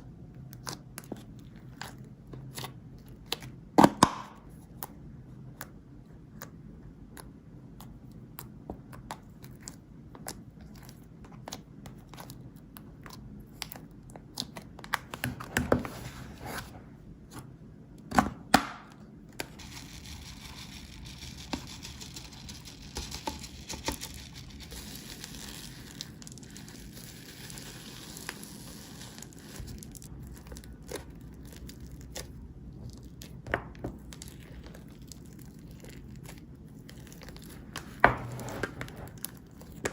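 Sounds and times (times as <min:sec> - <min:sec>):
slime crackling and popping: 0:21.8 - 0:38.0.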